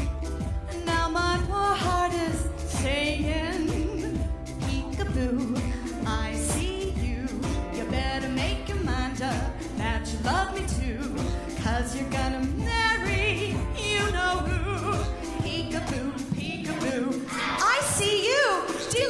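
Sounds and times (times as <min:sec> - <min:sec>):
instrumental accompaniment with beat: 0:00.0 - 0:19.0
person singing with vibrato: 0:00.0 - 0:19.0.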